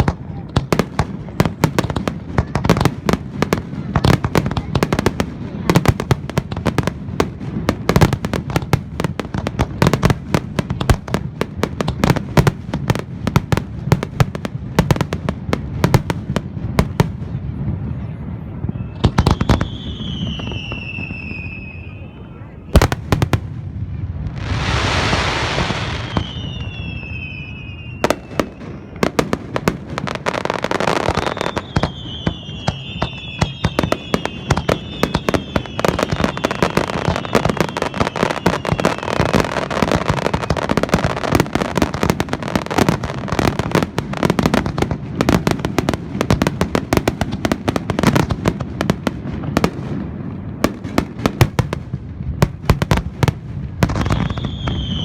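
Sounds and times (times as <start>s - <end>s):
fireworks bangs and crackling: 0.0s - 55.0s
fireworks whistles falling in pitch: 18.6s - 23.0s, 24.4s - 44.6s, 53.8s - 55.0s.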